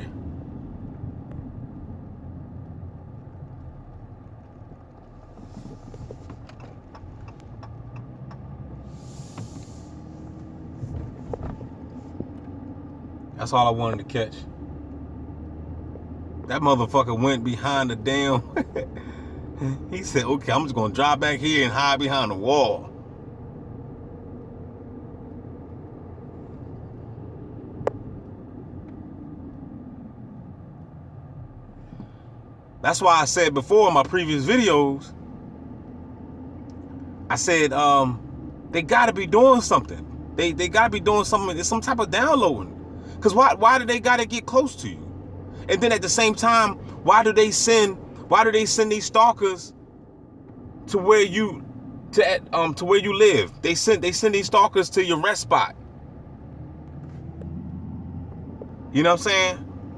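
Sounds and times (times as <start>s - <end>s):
car rumbling: 0.0s - 59.9s
brief hiss: 8.8s - 10.2s.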